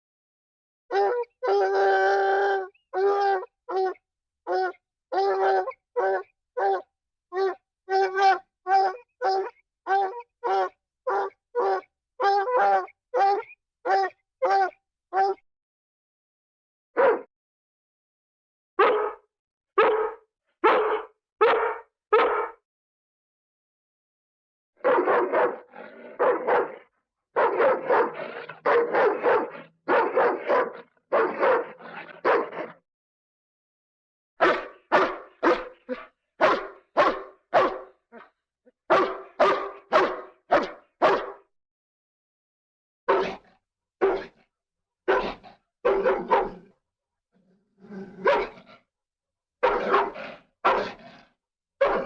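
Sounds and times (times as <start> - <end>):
dog barking: 3.1 - 15.4, 17.0 - 17.3, 18.8 - 22.6, 24.8 - 32.8, 34.4 - 38.3, 38.9 - 41.4, 43.1 - 43.4, 44.0 - 44.4, 45.1 - 46.8, 48.1 - 48.8, 49.6 - 51.1, 51.8 - 52.0.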